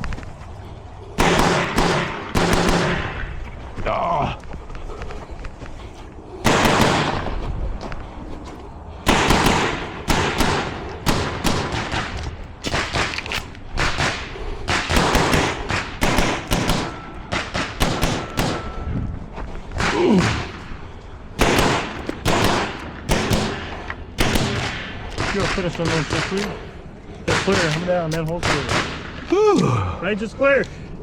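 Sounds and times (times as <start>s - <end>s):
pistol shots: 1.2s - 3.3s, 6.4s - 7.3s, 9.1s - 18.7s, 21.4s - 26.6s, 27.3s - 29.3s.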